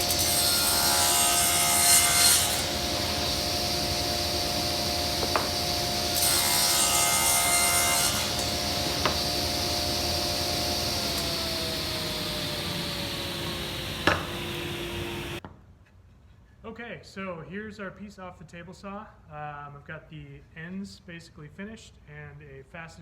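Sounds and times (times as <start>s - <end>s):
saw blade cutting hardwood: 0.0s - 15.4s
table saw whining: 0.0s - 15.4s.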